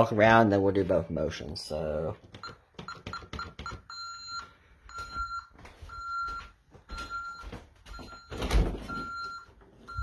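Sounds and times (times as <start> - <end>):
alarm keypad beeping: 2.4 - 10.0.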